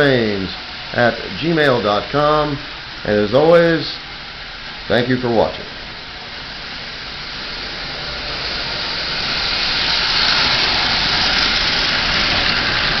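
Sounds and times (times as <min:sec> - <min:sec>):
toy train running on track: 0:06.4 - 0:13.0.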